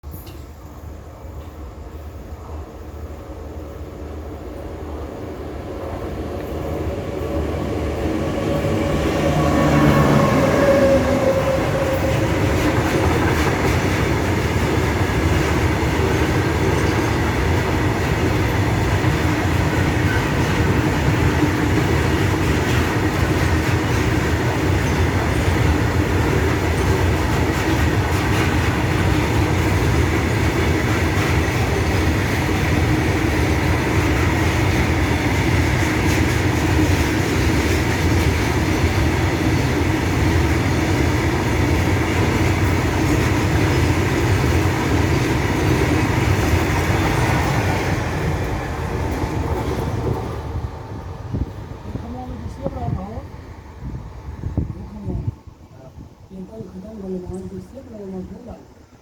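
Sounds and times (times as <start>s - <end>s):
train passing: 0.0s - 59.0s
locomotive tones dropping in pitch: 6.2s - 13.5s.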